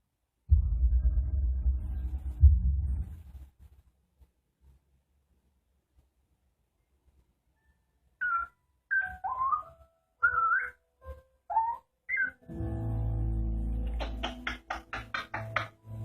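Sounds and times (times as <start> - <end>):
parrot whistling: 8.2 - 10.8, 11.5 - 12.4
music with held chord: 12.4 - 16.0
rhythmic beat: 13.8 - 16.0.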